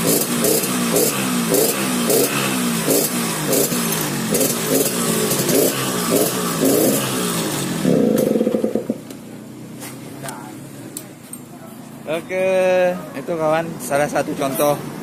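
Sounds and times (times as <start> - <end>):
two-stroke motorcycle engine revving: 0.0 - 9.3.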